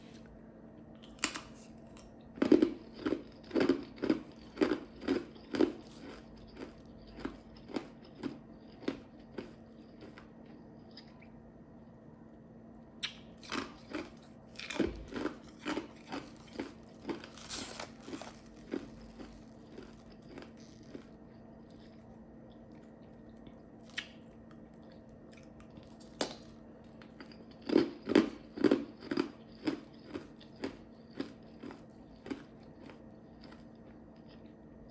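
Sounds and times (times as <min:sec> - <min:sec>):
ice chips crunching: 0:01.1 - 0:10.2, 0:13.4 - 0:21.1, 0:25.7 - 0:33.6.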